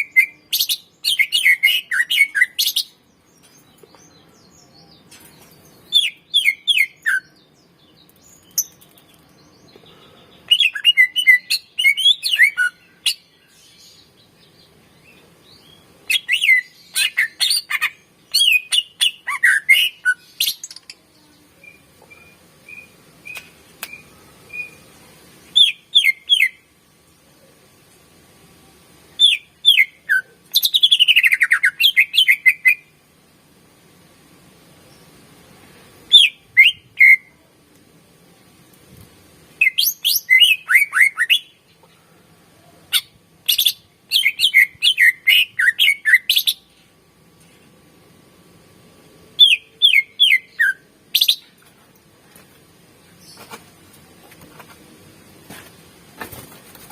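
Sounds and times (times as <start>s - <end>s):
bird whistling song: 0.0s - 3.0s, 5.9s - 7.4s, 10.5s - 13.3s, 15.6s - 20.8s, 25.6s - 26.6s, 29.2s - 32.9s, 36.1s - 37.3s, 39.6s - 41.6s, 42.9s - 46.7s, 49.4s - 51.5s.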